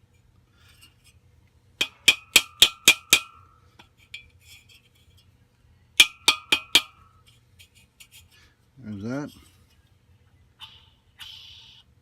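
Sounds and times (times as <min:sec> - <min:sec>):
hammer striking metal: 0:01.8 - 0:03.4, 0:06.0 - 0:07.0.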